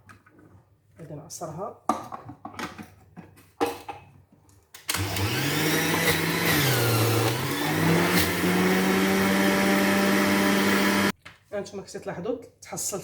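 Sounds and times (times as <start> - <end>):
juicer motor running: 4.9 - 11.1.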